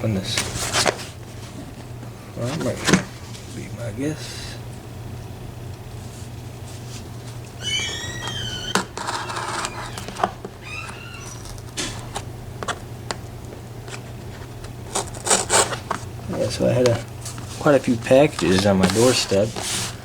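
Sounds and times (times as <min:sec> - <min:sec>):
packing tape squealing: 0:07.6 - 0:12.3, 0:14.8 - 0:16.4
packaging rustling and crinkling: 0:13.8 - 0:20.0.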